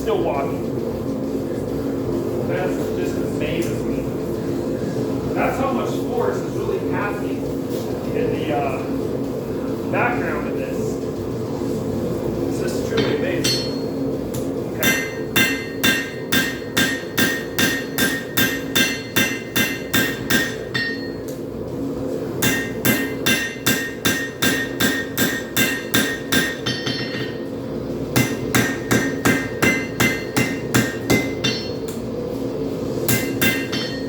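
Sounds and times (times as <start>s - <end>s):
hammer striking spike on anvil: 14.8s - 21.2s, 22.4s - 27.4s, 28.2s - 31.9s, 33.1s - 34.0s.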